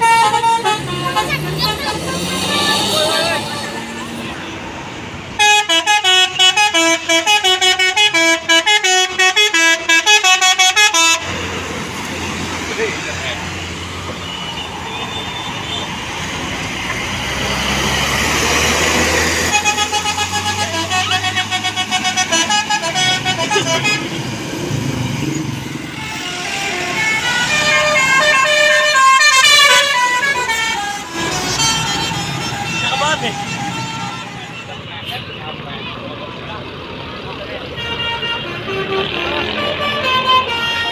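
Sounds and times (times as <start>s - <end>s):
bus horn playing a tune: 0.0s - 4.2s, 5.3s - 11.4s, 18.7s - 24.3s, 25.8s - 35.3s, 37.6s - 40.9s
engine and traffic rumble: 0.0s - 40.9s.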